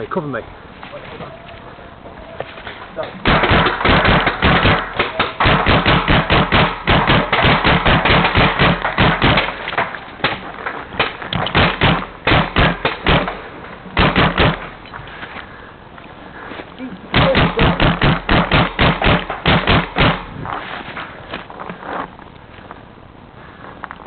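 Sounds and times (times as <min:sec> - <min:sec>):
paintball marker firing rapidly: 0:03.2 - 0:10.4, 0:11.0 - 0:13.4, 0:14.0 - 0:14.7, 0:17.2 - 0:20.3.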